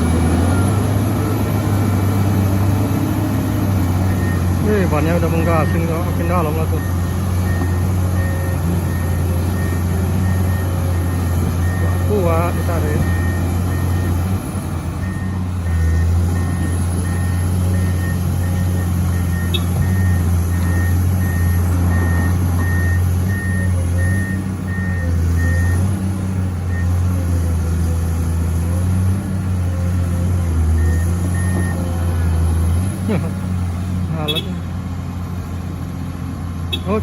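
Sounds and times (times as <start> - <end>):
heavy diesel engines under load: 0.0 - 37.0
reversing alarm beeping: 4.0 - 14.2, 15.0 - 25.9, 30.7 - 31.9.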